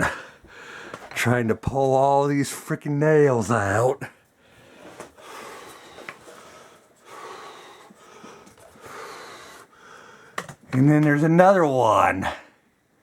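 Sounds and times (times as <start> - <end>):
man breathing hard: 0.0 - 1.1, 4.4 - 10.5.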